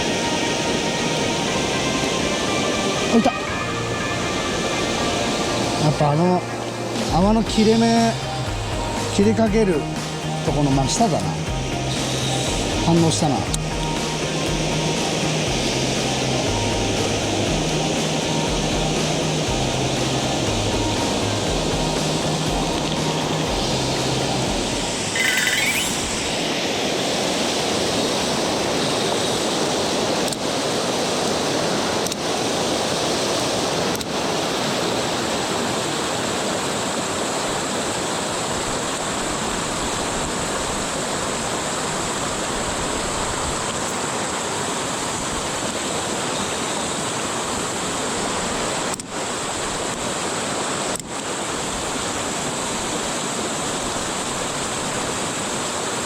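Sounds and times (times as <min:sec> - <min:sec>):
river rushing over rocks: 0:00.0 - 0:56.0
short high-pitched sound: 0:25.0 - 0:26.4.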